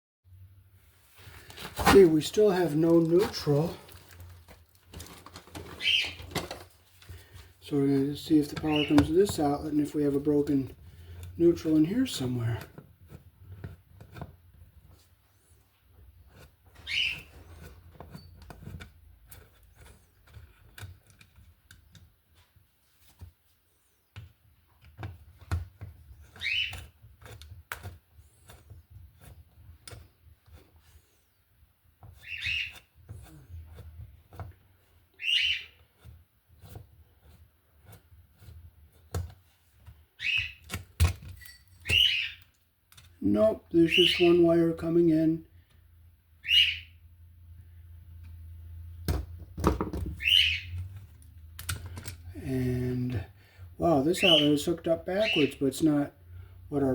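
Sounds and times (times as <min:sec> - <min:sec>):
bird chirping: 0:05.6 - 0:06.4, 0:08.5 - 0:09.2, 0:16.8 - 0:17.6, 0:26.2 - 0:26.9, 0:32.2 - 0:32.8, 0:35.1 - 0:35.8, 0:40.2 - 0:40.7, 0:41.4 - 0:42.6, 0:43.7 - 0:44.6, 0:46.4 - 0:47.0, 0:50.1 - 0:50.8, 0:54.2 - 0:55.6
tools clicking and scraping: 0:40.6 - 0:43.2, 0:50.8 - 0:52.3.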